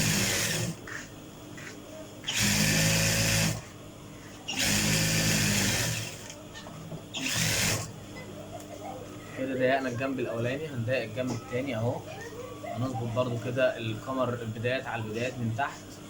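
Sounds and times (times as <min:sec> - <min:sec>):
sewing machine stitching: 0:00.0 - 0:00.8, 0:02.3 - 0:03.6, 0:04.5 - 0:06.4, 0:07.1 - 0:07.9.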